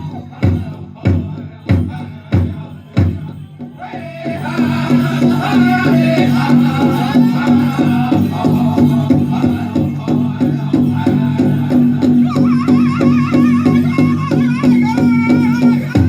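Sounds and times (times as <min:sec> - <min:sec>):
big drum beat: 0:00.0 - 0:16.0
high-pitched group singing: 0:00.0 - 0:16.0.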